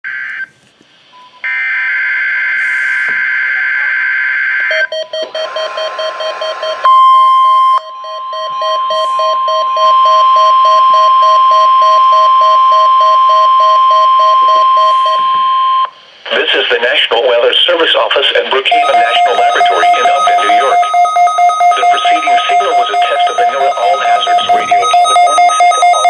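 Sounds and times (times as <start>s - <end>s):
pulsing beep: 4.7s - 15.9s, 18.7s - 26.0s
pager test tones: 4.8s - 15.9s, 18.7s - 26.0s
long steady electronic tone: 4.8s - 16.0s, 18.6s - 26.0s
screeching data tone: 5.1s - 10.3s, 18.7s - 26.0s
choppy electronic tones: 18.7s - 26.0s
digital data burst: 18.7s - 26.0s.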